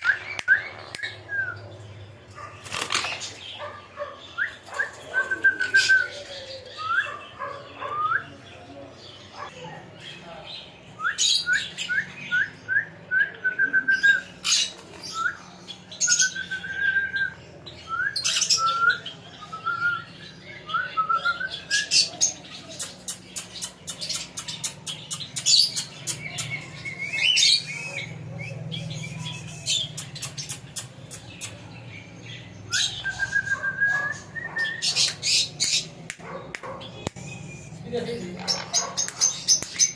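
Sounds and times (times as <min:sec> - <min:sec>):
parrot chirping and squawking: 0:37.6 - 0:39.9.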